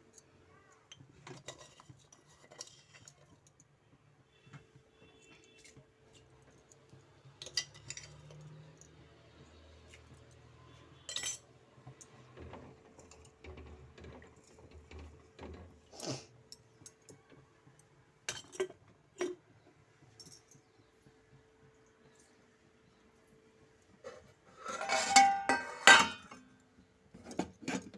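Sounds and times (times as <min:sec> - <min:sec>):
metal utensils clinking on pots: 0:00.9 - 0:03.7, 0:05.2 - 0:09.1, 0:09.8 - 0:20.8, 0:24.0 - 0:26.6, 0:27.2 - 0:27.9.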